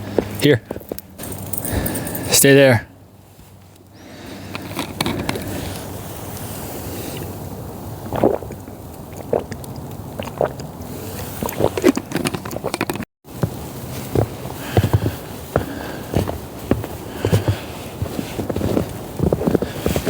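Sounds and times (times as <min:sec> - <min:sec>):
steady wind: 0:00.0 - 0:20.0
footsteps crunching in snow: 0:13.3 - 0:20.0.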